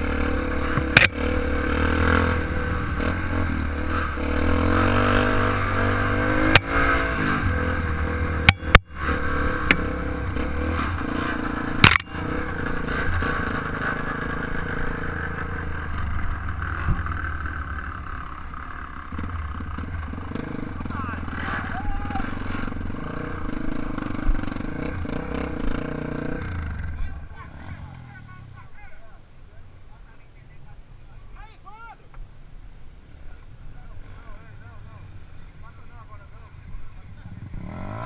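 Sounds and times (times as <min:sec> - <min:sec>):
motorcycle engine running: 0:00.0 - 0:28.8, 0:33.2 - 0:38.0
sharp knocks and clatter: 0:11.8 - 0:12.3.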